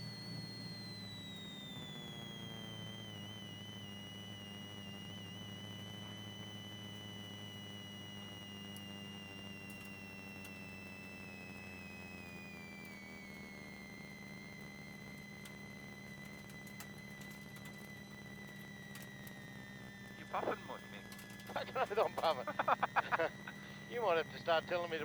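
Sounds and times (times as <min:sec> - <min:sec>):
car engine drone: 0:12.0 - 0:25.0.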